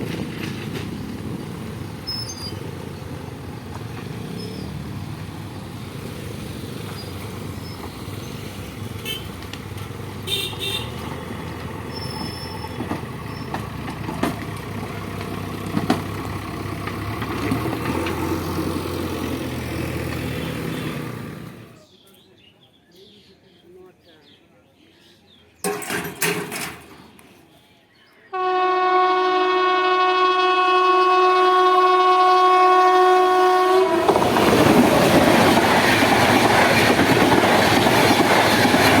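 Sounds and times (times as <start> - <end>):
car horn toots: 10.3 - 11.0, 28.4 - 34.0.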